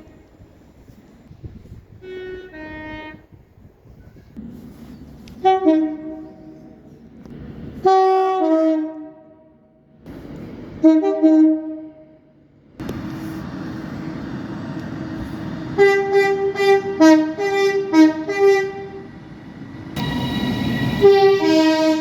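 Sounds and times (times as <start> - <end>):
two-tone train horn blasts: 1.9 - 3.4, 5.3 - 6.8, 7.8 - 9.7, 10.8 - 12.3, 15.8 - 19.2, 20.0 - 22.0.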